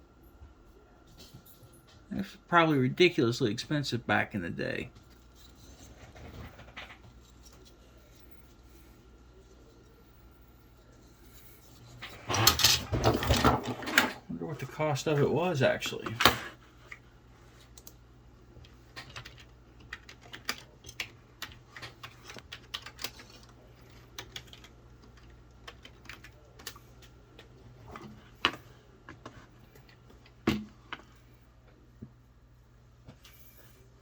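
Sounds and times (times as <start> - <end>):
faint steady hum: 0.0 - 34.0
computer keyboard typing: 18.9 - 27.5.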